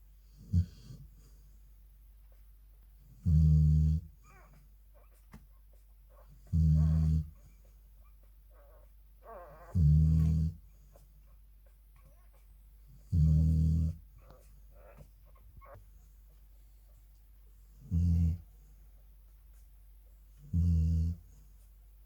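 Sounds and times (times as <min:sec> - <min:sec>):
dog snoring: 0:00.3 - 0:01.1, 0:03.1 - 0:04.5, 0:06.4 - 0:07.4, 0:09.3 - 0:10.6, 0:12.9 - 0:14.0, 0:17.8 - 0:18.5, 0:20.4 - 0:21.3.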